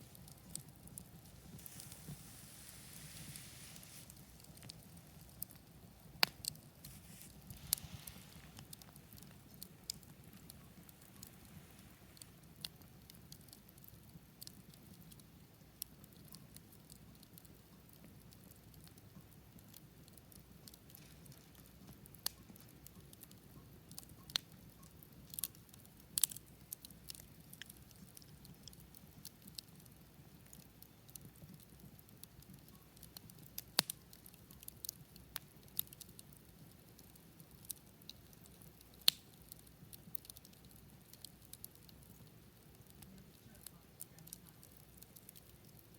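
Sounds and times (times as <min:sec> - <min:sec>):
campfire crackling: 0:00.0 - 0:45.9.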